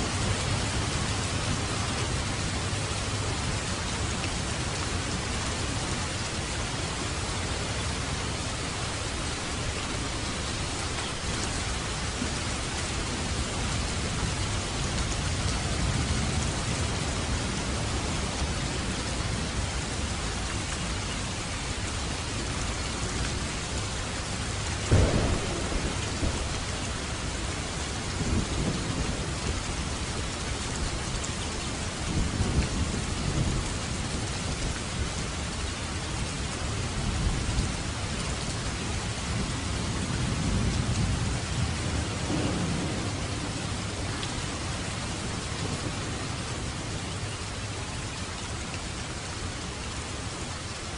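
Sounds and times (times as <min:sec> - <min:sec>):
steady rain falling: 0:00.0 - 0:50.9
low rolls of thunder: 0:24.8 - 0:30.2, 0:39.0 - 0:47.0
sharp thunderclap: 0:24.9 - 0:29.4, 0:42.3 - 0:43.8.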